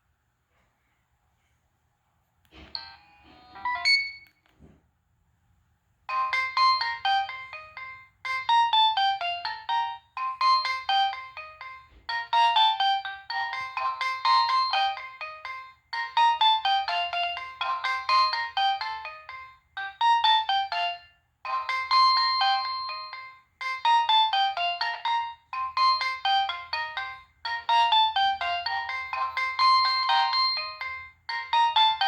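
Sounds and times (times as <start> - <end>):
electronic ringtone melody: 2.8 - 4.3, 6.1 - 32.0.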